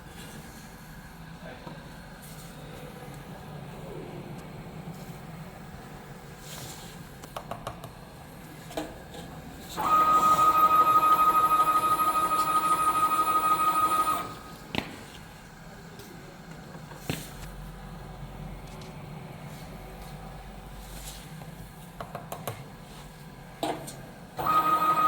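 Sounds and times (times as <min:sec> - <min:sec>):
motor whining: 0:09.8 - 0:14.5.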